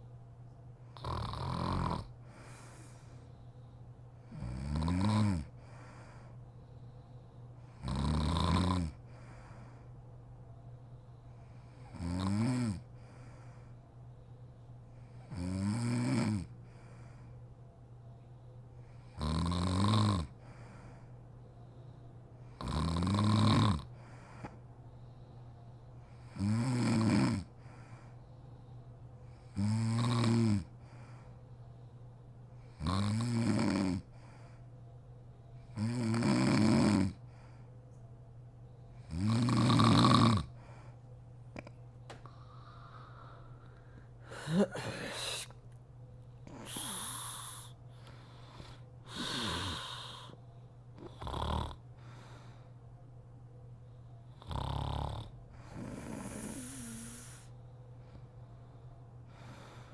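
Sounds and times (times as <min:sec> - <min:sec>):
steady low hum: 0:00.0 - 0:59.9
woman snoring: 0:01.0 - 0:02.1, 0:04.3 - 0:05.5, 0:07.8 - 0:09.0, 0:11.9 - 0:12.8, 0:15.3 - 0:16.5, 0:19.2 - 0:20.3, 0:22.6 - 0:23.9, 0:26.3 - 0:27.5, 0:29.6 - 0:30.7, 0:32.8 - 0:34.1, 0:35.8 - 0:37.2, 0:39.1 - 0:40.5, 0:42.3 - 0:45.5, 0:46.5 - 0:47.8, 0:49.0 - 0:50.4, 0:51.0 - 0:51.8, 0:54.4 - 0:57.5.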